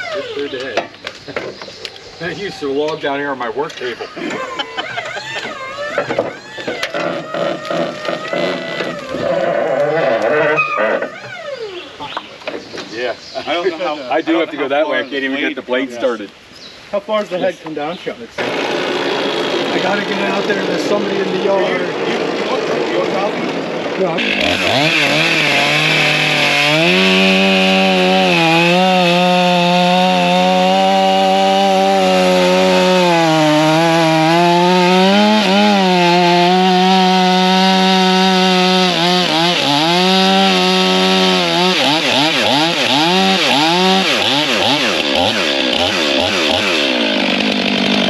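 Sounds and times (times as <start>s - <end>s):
chainsaw cutting wood: 5.1s - 11.4s, 18.4s - 48.0s.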